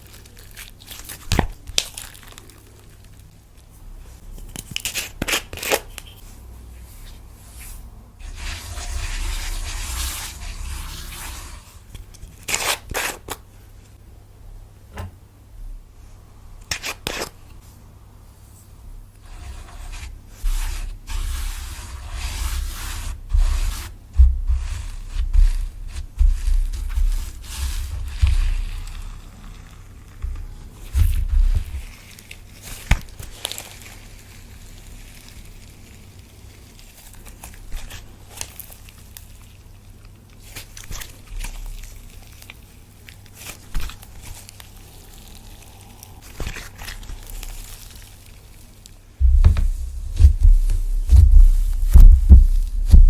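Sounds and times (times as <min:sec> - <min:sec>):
slime being kneaded by hand: 0:00.0 - 0:03.3, 0:19.2 - 0:53.0
hands squishing slime: 0:40.4 - 0:53.0
low thumps: 0:49.2 - 0:53.0.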